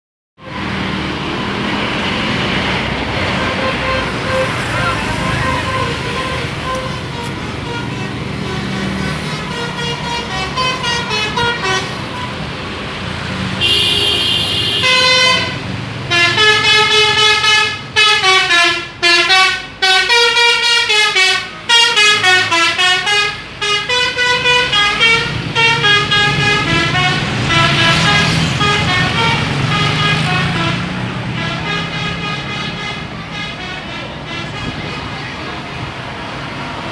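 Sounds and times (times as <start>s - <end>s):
multi-tone bus horn: 3.1s - 12.6s, 13.6s - 35.8s.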